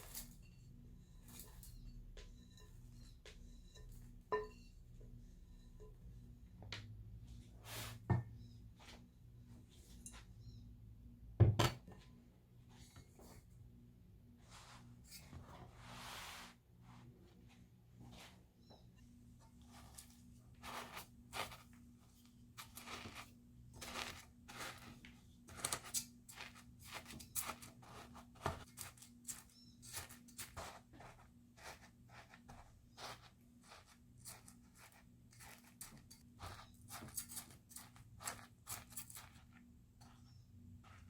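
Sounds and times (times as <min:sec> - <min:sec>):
faint electrical hum: 0:00.0 - 0:41.0
rustling and crinkling: 0:19.4 - 0:41.0.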